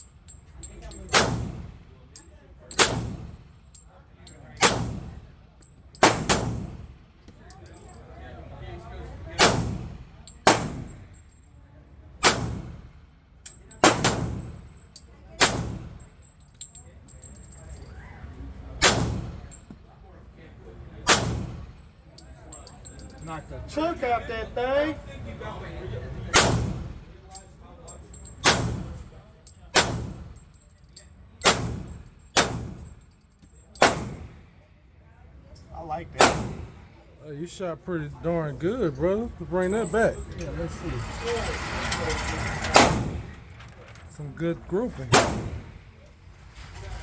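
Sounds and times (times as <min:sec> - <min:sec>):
pistol shots with ringing echo: 0:01.1 - 0:01.7, 0:02.7 - 0:03.4, 0:04.6 - 0:05.2, 0:06.0 - 0:06.9, 0:09.4 - 0:11.0, 0:12.2 - 0:12.8, 0:13.8 - 0:14.6, 0:15.4 - 0:16.0, 0:18.8 - 0:19.6, 0:21.0 - 0:21.7, 0:26.3 - 0:27.0, 0:28.4 - 0:29.0, 0:29.7 - 0:30.4, 0:31.4 - 0:32.9, 0:33.8 - 0:34.4, 0:36.2 - 0:36.9, 0:45.1 - 0:45.8
pistol shots echoing: 0:31.4 - 0:32.8, 0:33.8 - 0:34.3, 0:36.2 - 0:36.8, 0:45.1 - 0:45.8.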